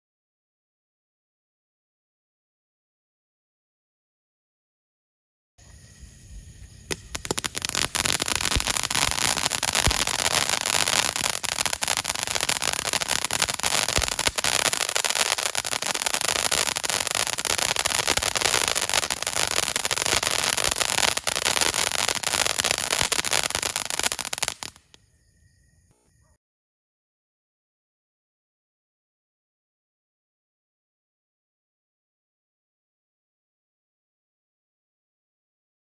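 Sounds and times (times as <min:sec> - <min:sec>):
crackling fountain firework hissing: 0:05.7 - 0:25.0.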